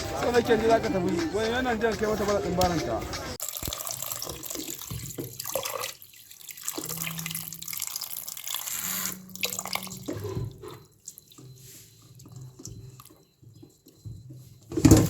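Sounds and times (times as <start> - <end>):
running water splashing: 3.1 - 13.2.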